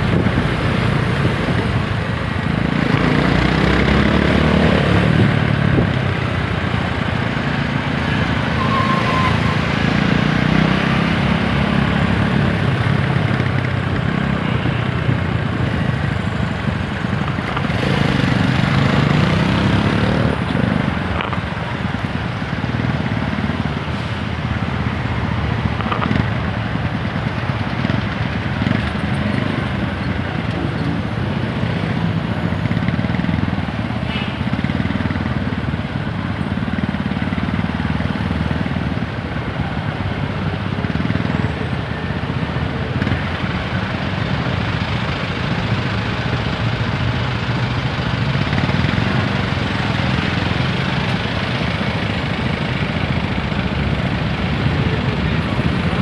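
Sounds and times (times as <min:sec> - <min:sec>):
motorcycle engine revving: 0:00.0 - 0:21.1, 0:42.6 - 0:56.0
road and wind noise: 0:00.0 - 0:56.0.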